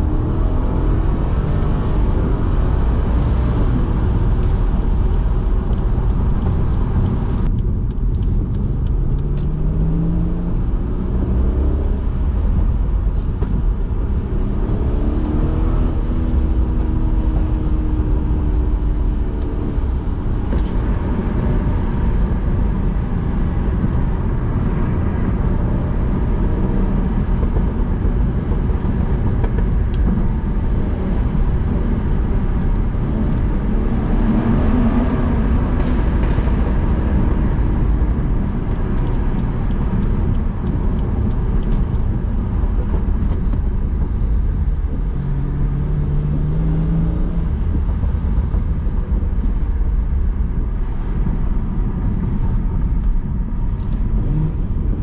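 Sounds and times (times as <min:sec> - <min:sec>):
low road rumble: 0:00.0 - 0:55.0.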